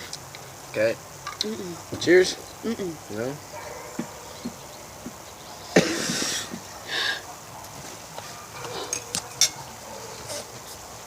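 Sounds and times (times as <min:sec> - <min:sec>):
sharp hissing burst: 0:00.0 - 0:07.5
fork clinking against plate: 0:08.9 - 0:09.6.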